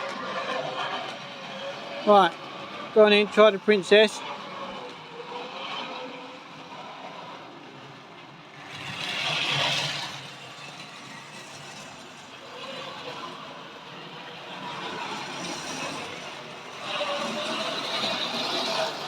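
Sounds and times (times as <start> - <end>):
wheels rattling over rails: 0.0 - 19.0
small motors whirring: 8.6 - 19.0.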